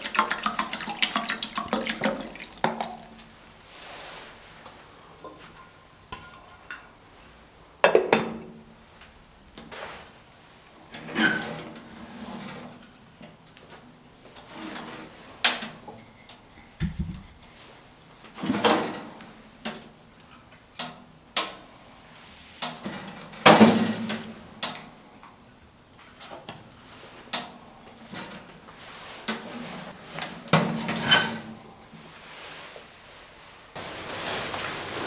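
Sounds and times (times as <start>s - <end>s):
hard objects knocking and clanking: 16.8s - 17.3s.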